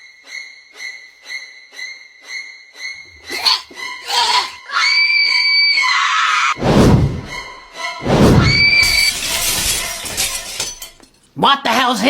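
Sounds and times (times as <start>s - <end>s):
hissing rush: 6.6s - 9.2s
high held squeal: 7.3s - 9.3s.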